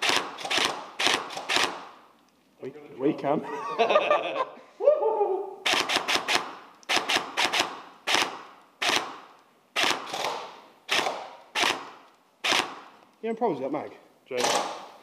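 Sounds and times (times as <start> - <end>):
airsoft gun shots: 0.0 - 2.0, 5.6 - 13.0, 14.4 - 15.0.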